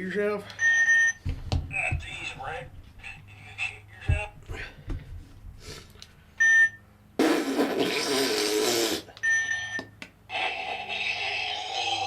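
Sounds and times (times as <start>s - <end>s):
short electronic beeps: 6.4s - 6.8s, 9.2s - 10.0s
loud raspy noise: 10.3s - 12.0s.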